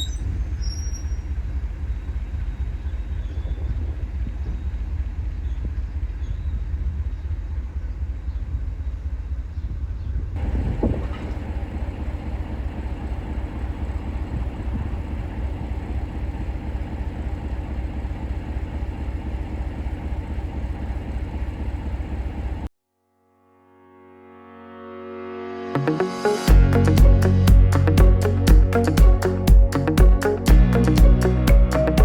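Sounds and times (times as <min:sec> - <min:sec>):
train rumbling: 0:00.0 - 0:22.7
brief rising sound: 0:24.6 - 0:32.0.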